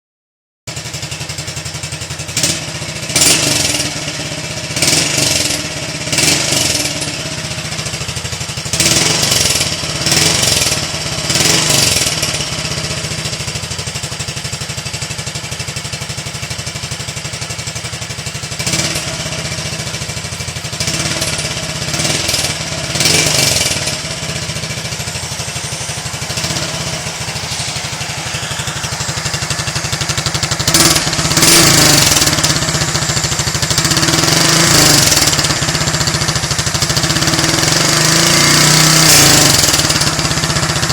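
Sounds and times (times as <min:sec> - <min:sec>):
motorcycle engine idling and revving: 0:00.7 - 0:40.9.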